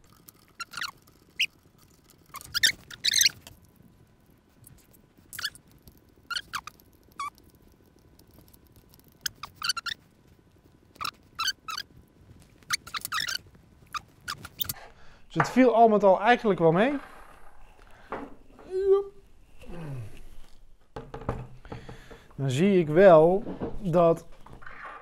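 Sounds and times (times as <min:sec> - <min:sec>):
short high squeaks and scrapes: 0:00.5 - 0:01.6, 0:02.3 - 0:03.5, 0:05.3 - 0:05.6, 0:09.2 - 0:10.0, 0:11.0 - 0:11.9, 0:12.6 - 0:14.8.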